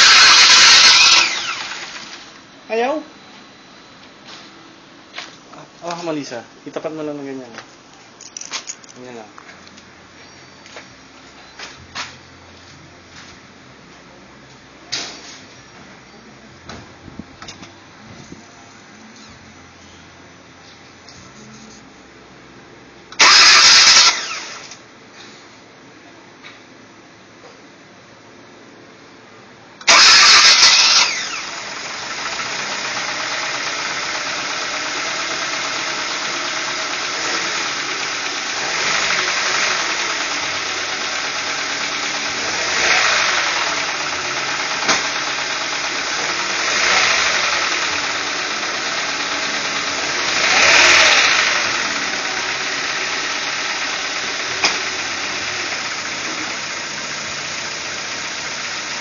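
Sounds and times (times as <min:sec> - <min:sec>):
car engine cranking and starting: 0:00.0 - 0:02.4, 0:23.1 - 0:24.8, 0:29.8 - 0:59.0
car engine idling: 0:29.8 - 0:59.0.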